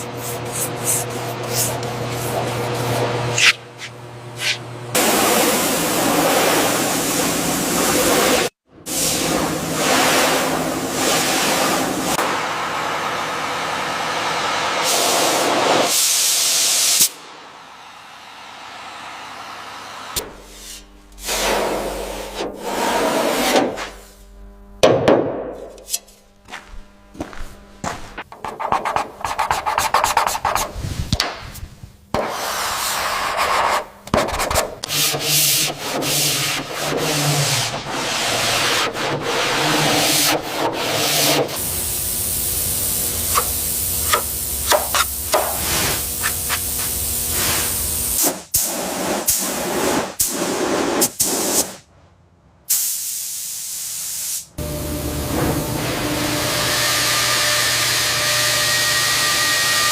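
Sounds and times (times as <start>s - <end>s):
sanding and rubbing: 0.0s - 4.6s, 28.4s - 31.1s, 32.3s - 41.6s, 44.1s - 47.9s.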